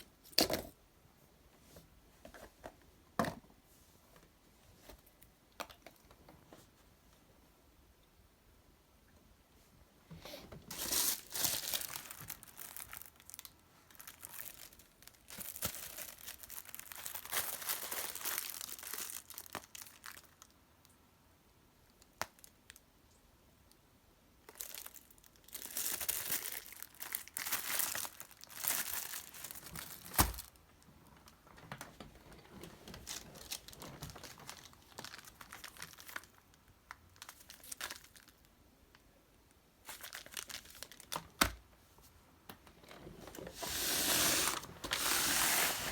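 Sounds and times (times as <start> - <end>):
plastic packaging crinkling: 10.7 - 20.5, 24.5 - 30.6, 32.5 - 38.4, 39.8 - 41.4, 43.0 - 45.9.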